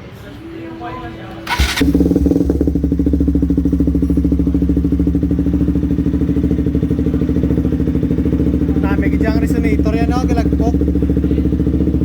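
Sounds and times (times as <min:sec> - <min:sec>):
motorcycle engine idling: 0:01.4 - 0:12.0.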